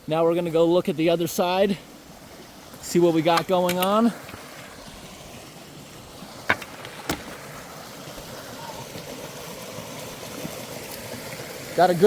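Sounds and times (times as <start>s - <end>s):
water flowing in culvert: 0.0s - 12.0s
sharp clicks: 3.3s - 4.0s.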